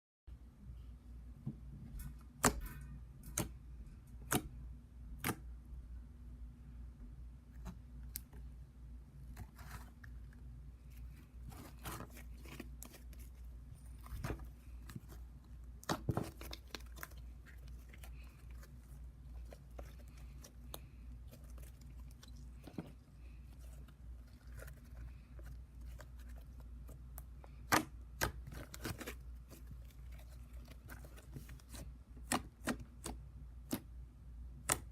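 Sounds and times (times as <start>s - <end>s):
steady low hum: 0.3s - 34.9s
slime clicking and crackling: 11.5s - 33.9s.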